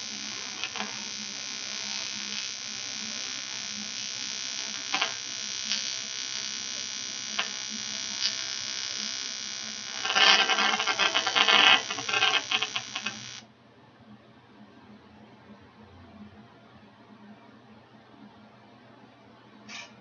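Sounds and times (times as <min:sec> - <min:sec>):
welding arc buzzing and crackling: 0:00.0 - 0:13.4.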